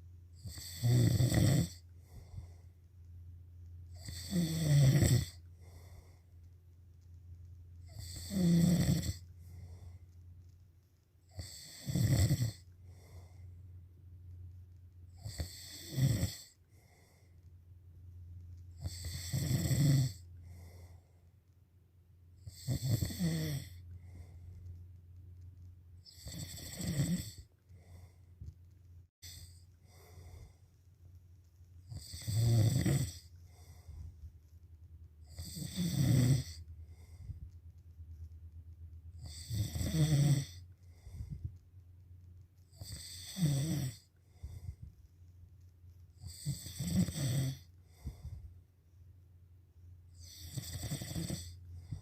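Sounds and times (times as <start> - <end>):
steady low hum: 0.0 - 52.0
person snoring loudly: 0.4 - 1.8, 4.0 - 5.4, 7.9 - 9.2, 11.4 - 12.6, 15.2 - 16.5, 18.8 - 20.2, 22.5 - 23.8, 26.1 - 27.4, 31.9 - 33.3, 35.3 - 36.6, 39.2 - 40.6, 42.8 - 44.1, 46.3 - 47.7, 50.2 - 51.6.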